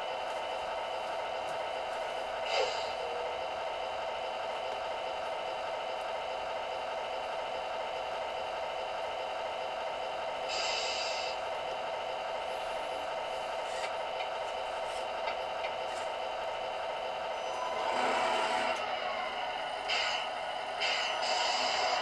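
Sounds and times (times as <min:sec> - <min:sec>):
diesel engine idling through speaker: 0:00.0 - 0:22.0
short air hisses: 0:10.5 - 0:11.4.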